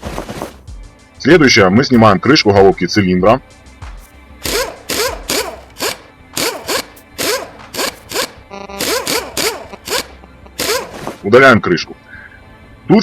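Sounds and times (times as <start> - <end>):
zipping ratchet sound effect: 4.4 - 11.0.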